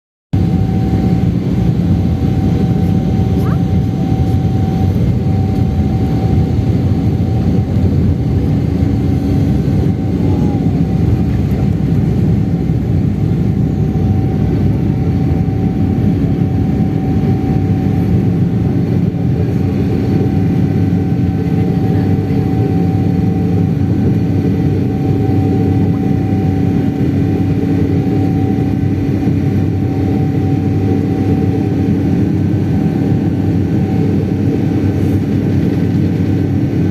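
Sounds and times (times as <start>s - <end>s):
jet engines rumbling: 0.4s - 36.9s
steady engine hums: 0.4s - 36.9s.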